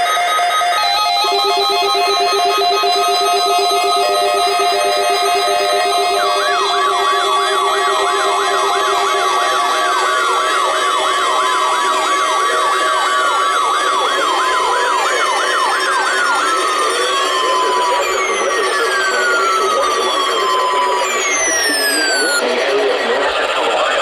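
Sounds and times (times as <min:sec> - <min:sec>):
siren-like sweeps: 0:00.0 - 0:22.5
steady high alarm tone: 0:00.0 - 0:22.5.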